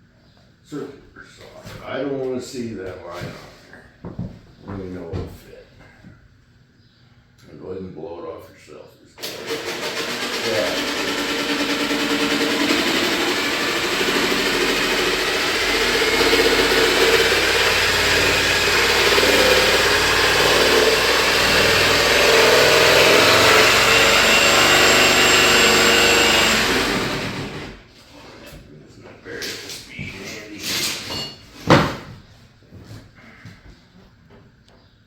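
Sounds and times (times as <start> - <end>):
electric jigsaw cutting wood: 9.2 - 27.8.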